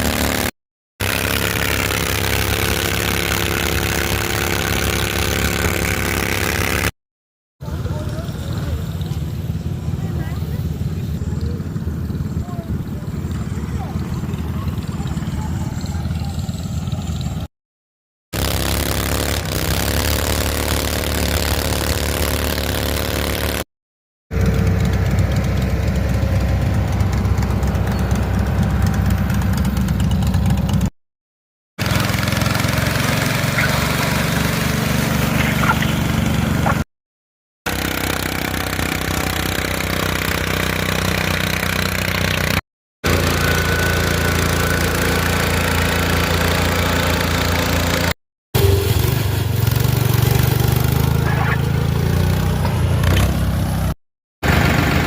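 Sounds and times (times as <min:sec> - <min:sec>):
lawn mower engine running: 0:00.0 - 0:06.9, 0:07.6 - 0:17.5, 0:18.4 - 0:23.6, 0:24.3 - 0:30.9, 0:31.8 - 0:36.8, 0:37.7 - 0:55.0.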